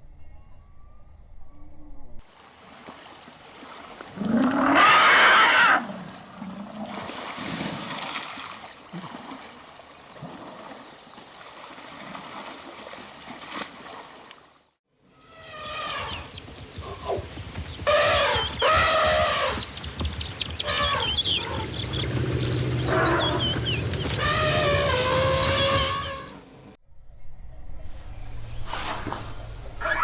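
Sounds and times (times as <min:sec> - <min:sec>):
elephant roaring: 0:04.2 - 0:06.9, 0:20.6 - 0:26.4
faint animal calls: 0:20.5 - 0:26.4, 0:29.8 - 0:30.0.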